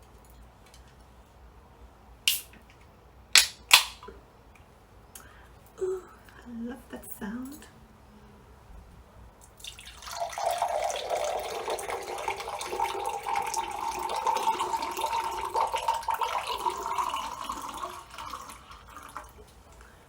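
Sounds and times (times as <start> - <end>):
liquid pouring into a glass: 9.6 - 19.5.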